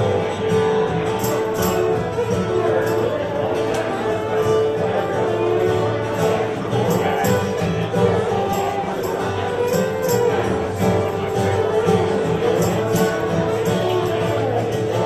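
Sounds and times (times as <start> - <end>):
live country-rock band: 0.0 - 15.0
tambourine shaking: 1.0 - 3.2, 6.0 - 15.0.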